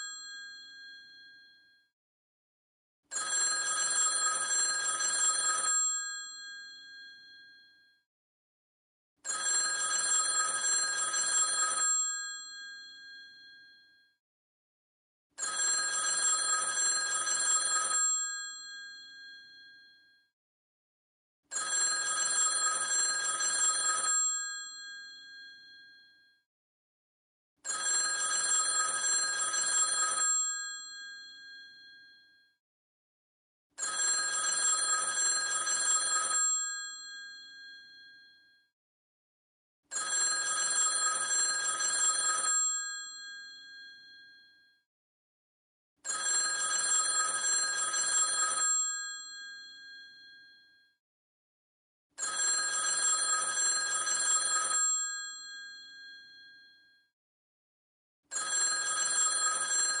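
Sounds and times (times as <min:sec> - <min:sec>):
telephone bell ringing: 0:00.0 - 0:01.8, 0:03.1 - 0:07.8, 0:09.2 - 0:13.9, 0:15.4 - 0:20.2, 0:21.5 - 0:26.3, 0:27.6 - 0:32.4, 0:33.8 - 0:38.5, 0:39.9 - 0:44.6, 0:46.0 - 0:50.8, 0:52.2 - 0:56.9, 0:58.3 - 1:00.0.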